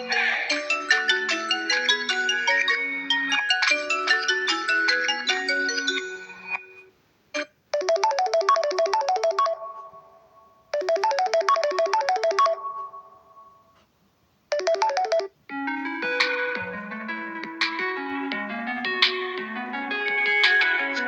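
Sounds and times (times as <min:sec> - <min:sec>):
mallet-like ringtone melody: 0:00.5 - 0:06.8, 0:07.8 - 0:13.7, 0:14.5 - 0:17.0
ringtone short notes: 0:14.5 - 0:15.3.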